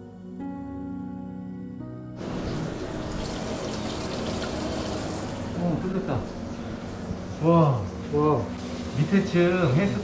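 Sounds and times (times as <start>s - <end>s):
soft background music: 0.0s - 10.0s
water rushing down drain: 2.2s - 5.6s.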